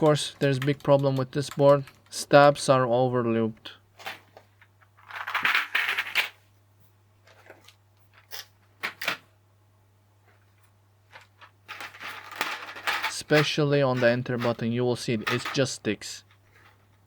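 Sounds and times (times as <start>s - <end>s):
mechanical keyboard keys clattering: 0.0s - 2.2s.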